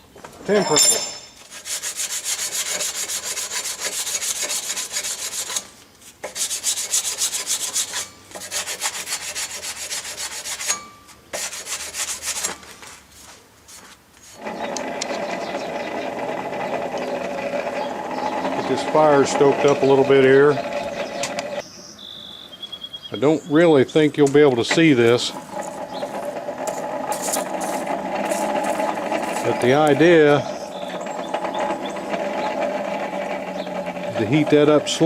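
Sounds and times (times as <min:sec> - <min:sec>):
sandpaper scratching on metal: 0:01.4 - 0:10.8, 0:11.4 - 0:13.3, 0:27.1 - 0:31.0
steady mechanical whir: 0:14.4 - 0:21.6, 0:24.6 - 0:35.0.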